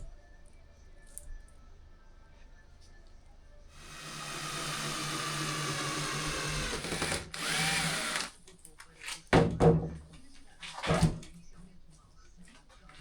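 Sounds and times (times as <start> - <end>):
power drill running: 3.8 - 8.4.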